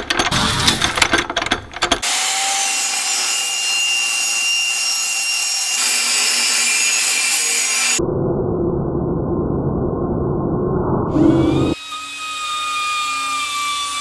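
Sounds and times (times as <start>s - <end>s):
mechanical clicking and clattering: 0.0s - 2.0s
saw cutting through steel tubing: 2.0s - 8.0s, 11.2s - 14.0s.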